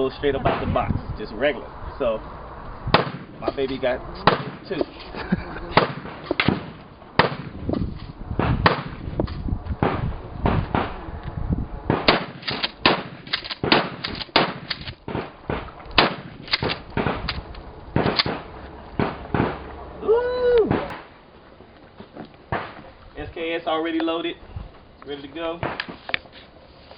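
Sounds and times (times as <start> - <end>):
gunshots: 2.9 - 3.6, 4.2 - 4.8, 5.7 - 7.6, 8.4 - 9.0, 9.8 - 11.0, 11.9 - 17.4, 18.0 - 19.6.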